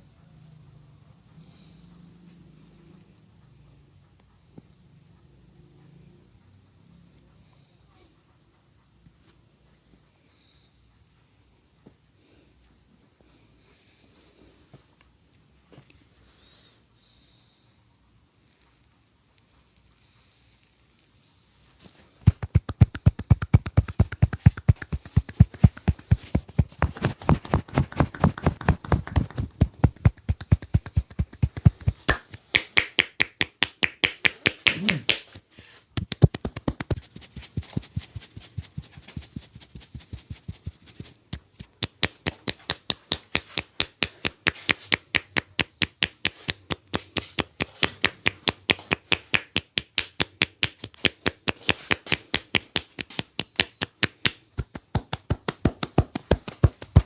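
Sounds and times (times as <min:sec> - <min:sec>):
hands slapping in percussive massage: 0:22.2 - 0:57.0.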